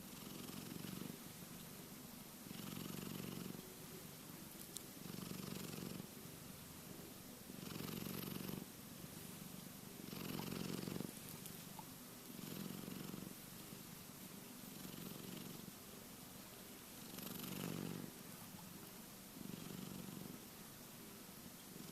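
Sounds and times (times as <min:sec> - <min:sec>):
cat snoring: 0:00.0 - 0:01.2, 0:02.5 - 0:03.6, 0:05.0 - 0:06.1, 0:06.8 - 0:11.3, 0:12.3 - 0:13.9, 0:14.7 - 0:15.7, 0:17.0 - 0:18.2, 0:19.4 - 0:20.5.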